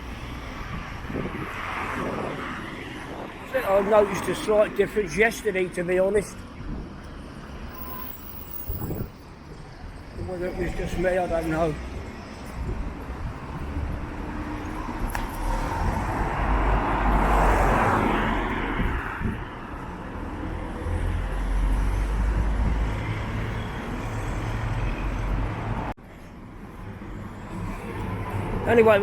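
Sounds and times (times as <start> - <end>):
street traffic: 0.0 - 29.0
wind buffeting microphone: 0.3 - 3.6, 8.6 - 11.1, 11.8 - 24.0
car passing: 10.8 - 25.9.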